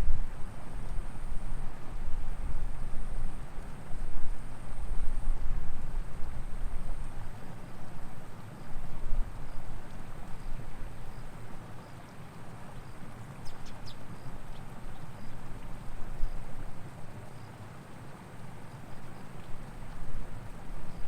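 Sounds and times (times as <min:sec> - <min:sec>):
wind rumble on microphone: 0:00.0 - 0:11.5.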